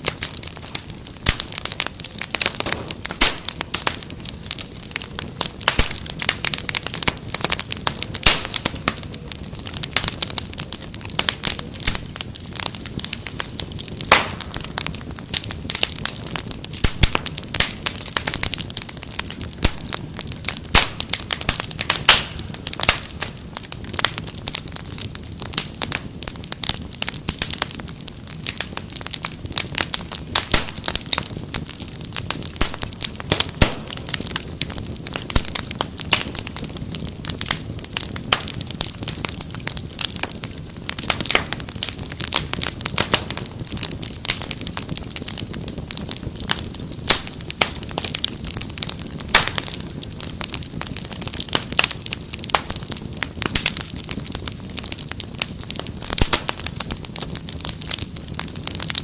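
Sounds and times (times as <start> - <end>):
wood fire crackling: 0.0 - 59.0
sharp pops and snaps: 1.2 - 4.6, 5.5 - 9.3, 13.8 - 14.8, 20.6 - 23.4, 30.4 - 31.8, 32.4 - 36.4, 46.5 - 50.2, 51.0 - 59.0.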